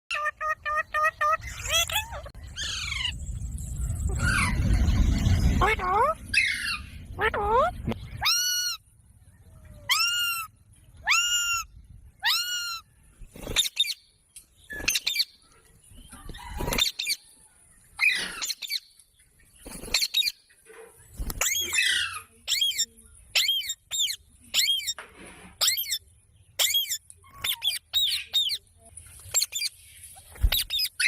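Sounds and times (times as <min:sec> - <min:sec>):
parrot calling and squawking: 0:00.1 - 0:03.2, 0:04.0 - 0:08.9, 0:09.8 - 0:12.9, 0:21.4 - 0:25.0, 0:26.6 - 0:28.6.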